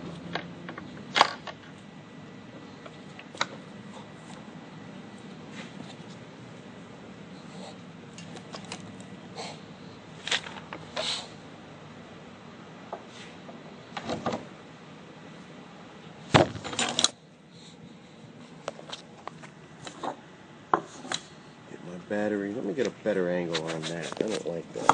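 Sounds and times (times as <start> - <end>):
metal parts clinking and rattling: 16.6 - 17.2.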